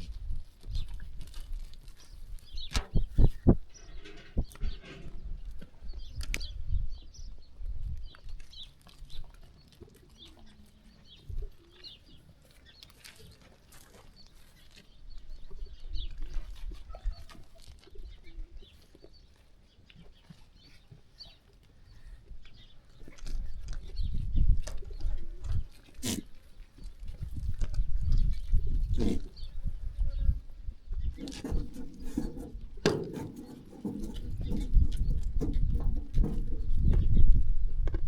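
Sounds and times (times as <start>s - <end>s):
birds cooing and chirping: 27.8s - 30.4s, 33.2s - 37.3s.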